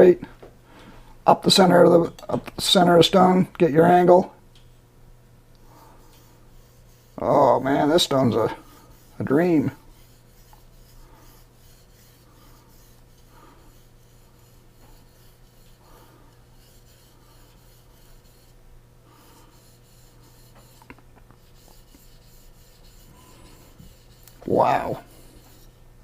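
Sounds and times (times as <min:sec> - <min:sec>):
knife scraping on whetstone: 0:06.0 - 0:18.6, 0:19.2 - 0:25.8.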